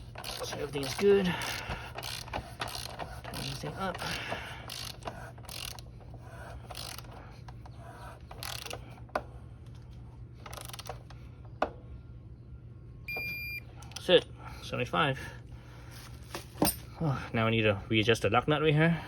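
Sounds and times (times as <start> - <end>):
torque wrench ratcheting: 0.0 - 7.2, 8.3 - 8.9, 10.5 - 11.1.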